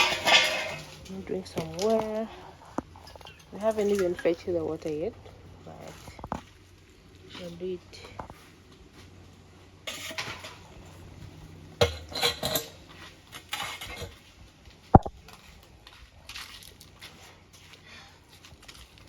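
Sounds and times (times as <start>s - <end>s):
dishes and cups clattering: 0.0s - 1.0s, 11.8s - 12.8s.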